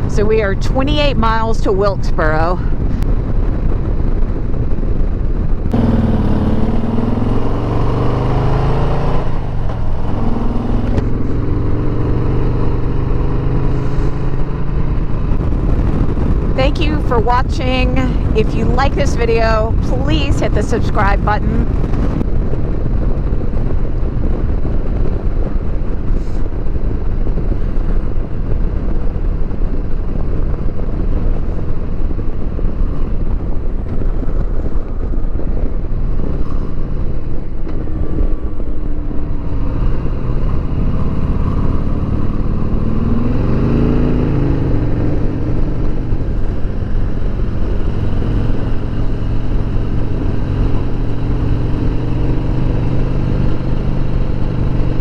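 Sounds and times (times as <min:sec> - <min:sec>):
motorcycle engine at speed: 0:00.0 - 0:55.0
wind rush: 0:00.0 - 0:55.0.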